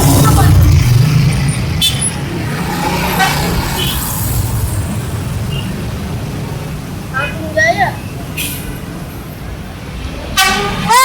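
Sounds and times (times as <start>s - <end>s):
bus engine rumble: 0.0s - 11.0s
road traffic noise: 0.0s - 11.0s.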